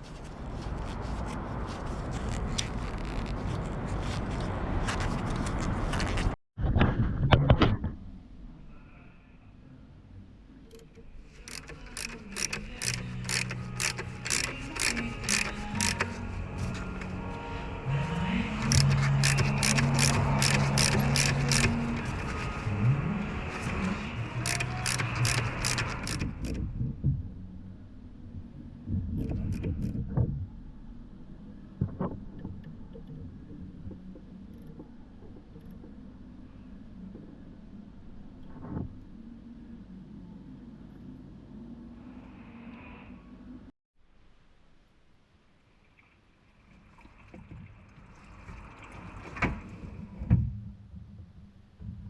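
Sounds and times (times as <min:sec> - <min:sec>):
ratchet wrench clicking: 0:10.7 - 0:16.9, 0:18.6 - 0:22.4, 0:24.4 - 0:26.6.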